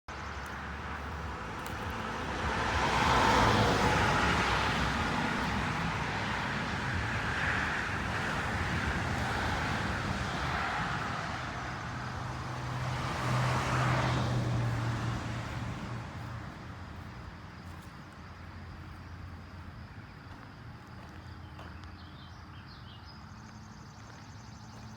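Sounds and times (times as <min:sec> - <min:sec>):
low engine hum: 0:00.1 - 0:24.9
vehicles passing by: 0:00.1 - 0:24.9.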